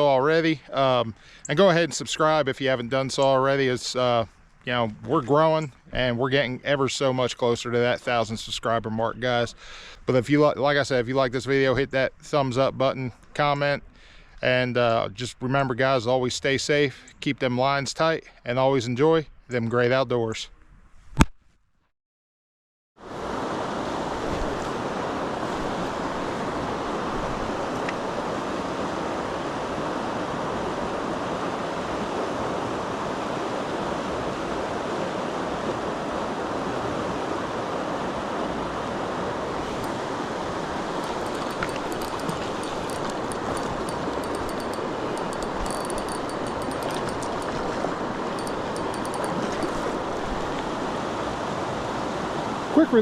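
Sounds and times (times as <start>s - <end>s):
creek water rushing: 23.1s - 53.0s.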